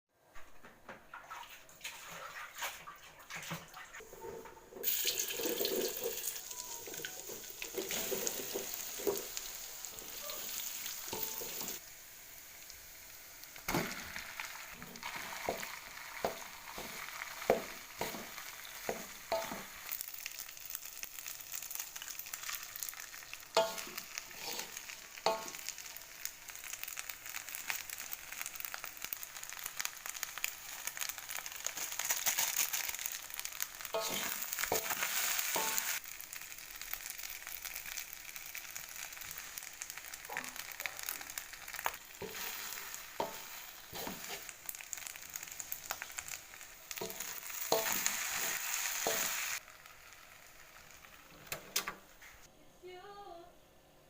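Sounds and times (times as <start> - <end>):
food sizzling in hot oil: 4.8 - 52.0
utensil knocking and scraping pan: 16.3 - 19.7.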